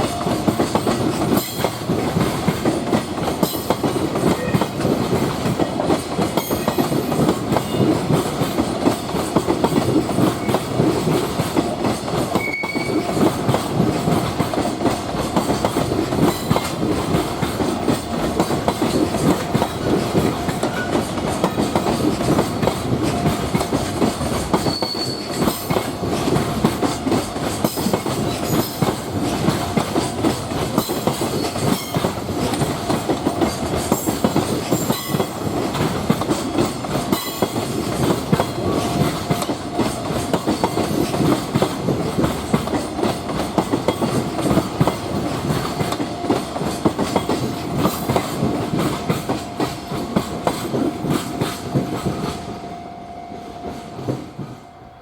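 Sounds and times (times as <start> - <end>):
wheels clicking over rail joints: 0.0 - 52.4
freight train rumbling and rattling: 0.0 - 55.0
thin wheel squeal: 24.6 - 25.3.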